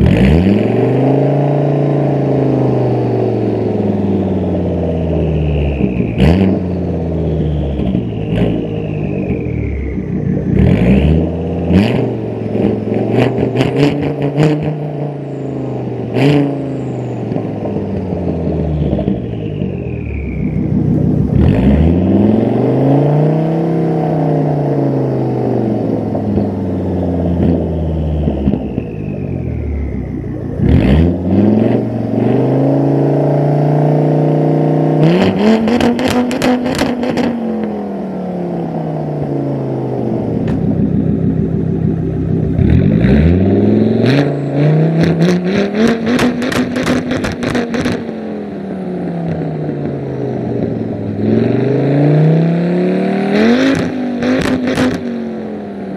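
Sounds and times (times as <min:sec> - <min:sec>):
car engine revving: 0:00.0 - 0:55.9
exhaust crackles and pops: 0:05.2 - 0:14.9, 0:16.0 - 0:22.6, 0:25.9 - 0:32.3, 0:35.0 - 0:37.6, 0:40.2 - 0:48.2, 0:49.1 - 0:51.5, 0:53.4 - 0:55.3.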